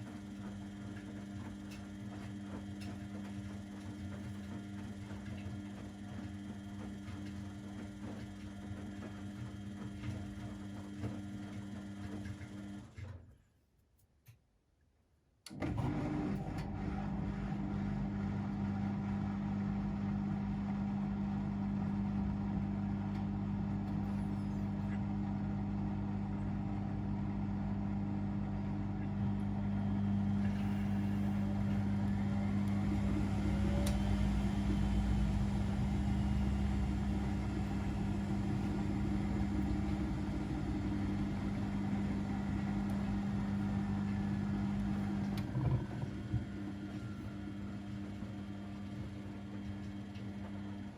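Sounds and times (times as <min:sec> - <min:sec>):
washing machine motor hum: 0:00.0 - 0:13.2, 0:15.5 - 0:50.9.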